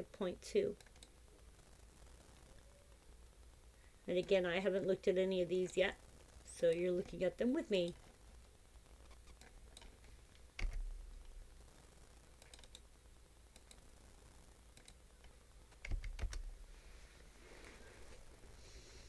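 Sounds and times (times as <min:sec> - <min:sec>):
computer keyboard clicks: 0:10.6 - 0:10.9, 0:12.4 - 0:12.8, 0:15.8 - 0:16.5.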